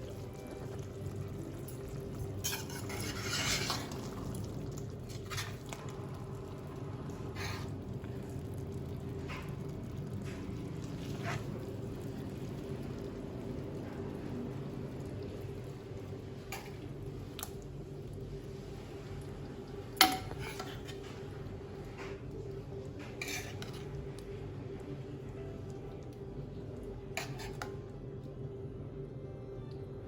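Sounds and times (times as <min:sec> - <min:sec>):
spoon scraping a pot: 0:02.4 - 0:04.0, 0:20.0 - 0:21.2, 0:23.0 - 0:23.9, 0:27.2 - 0:27.8.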